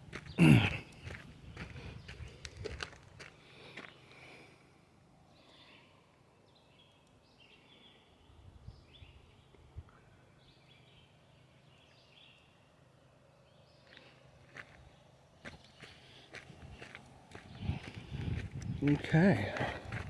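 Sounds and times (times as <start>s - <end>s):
footsteps on a trail: 0.0s - 4.4s, 13.8s - 20.0s
songbird singing: 0.0s - 20.0s.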